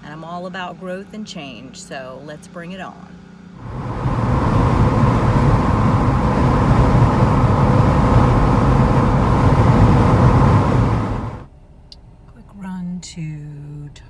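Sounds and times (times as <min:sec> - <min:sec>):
car road and engine noise: 0:03.1 - 0:14.0.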